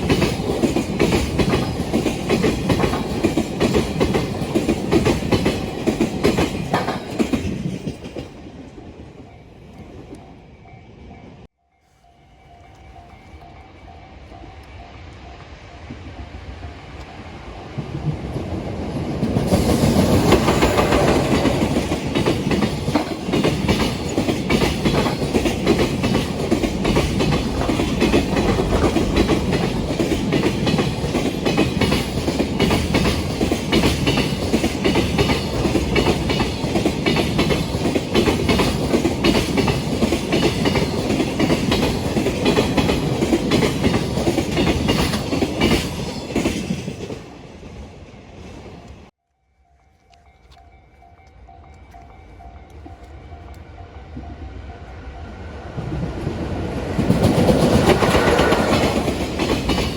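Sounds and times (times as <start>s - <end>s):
freight train wheels clattering: 0.0s - 8.9s, 17.8s - 49.1s, 55.7s - 59.9s.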